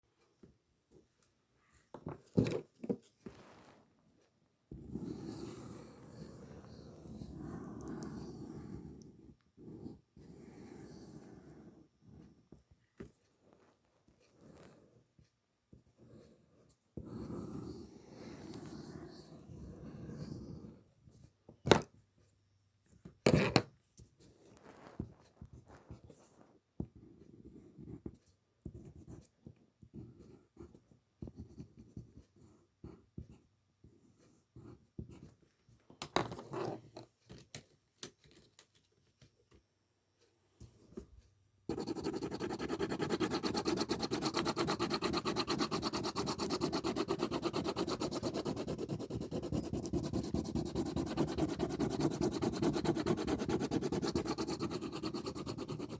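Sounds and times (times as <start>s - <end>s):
dense scratching noise: 41.7s - 55.9s.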